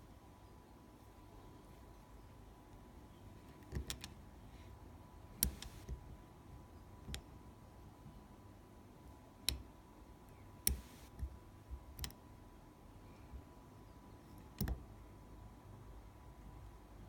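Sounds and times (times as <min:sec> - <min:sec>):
lock pick clicking in lock: 0:03.5 - 0:04.2, 0:11.9 - 0:12.2, 0:14.5 - 0:14.8.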